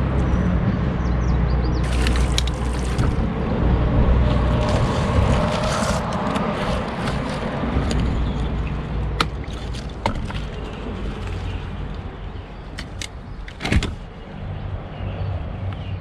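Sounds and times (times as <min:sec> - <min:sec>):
steady low rumble: 0:00.4 - 0:16.0
paddle knocking against hull: 0:04.3 - 0:14.3.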